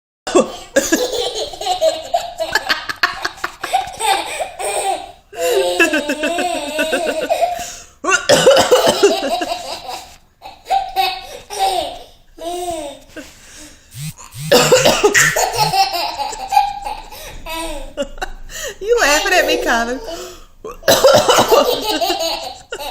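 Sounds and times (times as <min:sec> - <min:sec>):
baby laughing: 0:00.4 - 0:07.6, 0:14.0 - 0:18.2, 0:21.2 - 0:22.9
woman coughing: 0:08.2 - 0:09.3, 0:14.0 - 0:15.8, 0:20.7 - 0:21.9.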